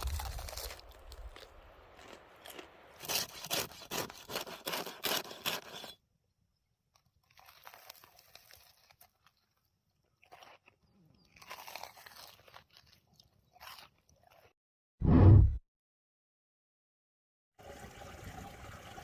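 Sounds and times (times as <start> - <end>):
crisp food crunching: 0.0 - 5.7, 6.8 - 14.6.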